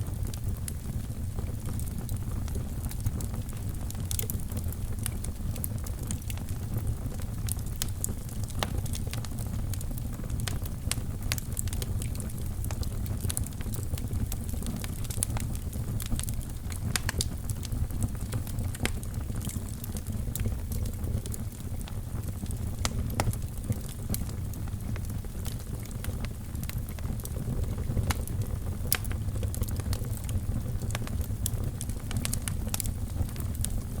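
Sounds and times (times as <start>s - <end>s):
fire crackling and popping: 0.0s - 34.0s
low rumble of flames: 0.0s - 34.0s.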